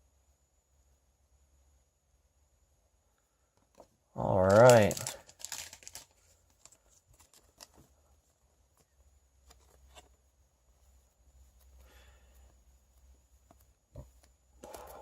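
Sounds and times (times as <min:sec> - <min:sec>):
trading cards clicking and rustling: 0:04.2 - 0:07.9, 0:14.0 - 0:15.0.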